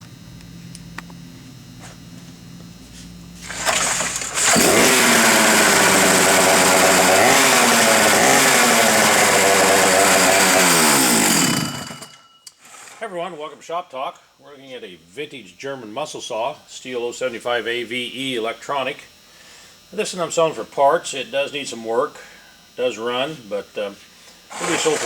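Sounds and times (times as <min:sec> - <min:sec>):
chainsaw running at high revs: 0:03.4 - 0:13.0, 0:24.5 - 0:25.0.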